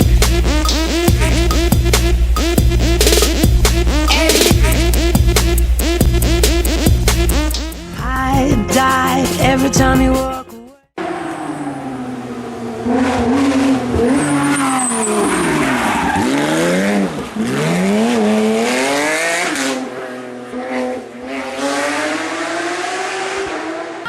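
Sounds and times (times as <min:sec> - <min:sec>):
rally car engine revving: 0:00.0 - 0:08.0, 0:11.0 - 0:24.0.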